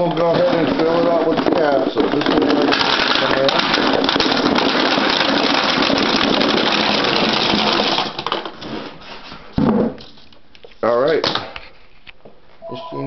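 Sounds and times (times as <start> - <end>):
plastic capsules clattering into machine: 0.0 - 8.6.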